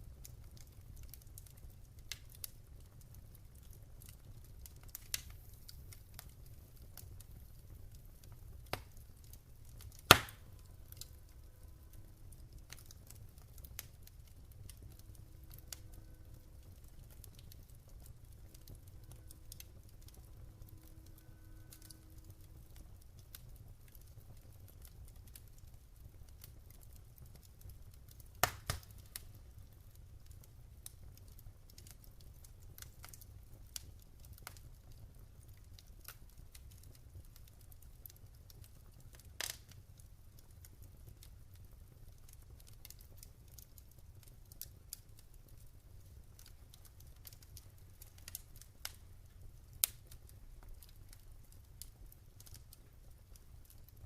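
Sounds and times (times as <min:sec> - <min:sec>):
low rumble of fire: 0:00.0 - 0:54.0
wood fire crackling: 0:00.0 - 0:54.0
sharp loud fire pops: 0:10.1 - 0:10.4.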